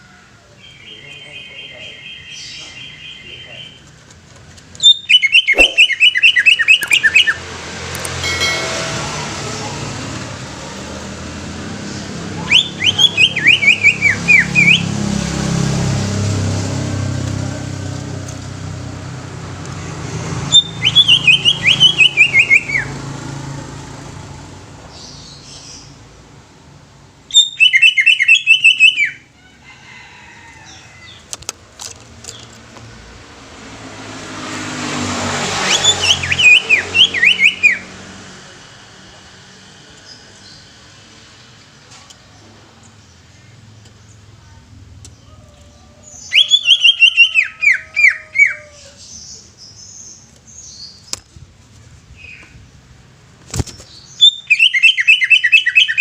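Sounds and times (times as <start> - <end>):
bird chattering song: 0.6 - 3.9, 4.8 - 7.4, 20.5 - 22.9, 27.3 - 29.2, 46.0 - 51.2, 53.7 - 56.0.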